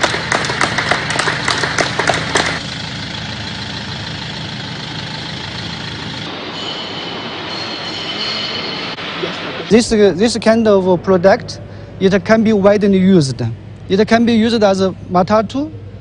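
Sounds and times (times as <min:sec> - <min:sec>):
applause: 0:00.0 - 0:02.6
vehicle engine idling: 0:00.0 - 0:06.4.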